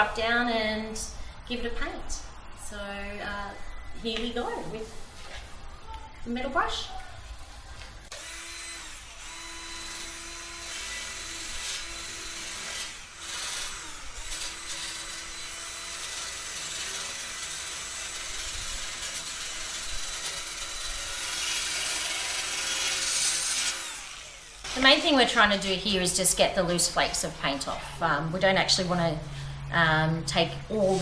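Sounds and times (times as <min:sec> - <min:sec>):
wire brush scraping metal: 0:30.7 - 0:31.0.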